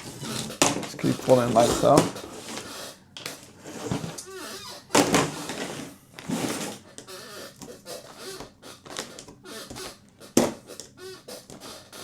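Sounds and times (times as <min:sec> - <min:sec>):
faint scratching: 0:00.0 - 0:04.5.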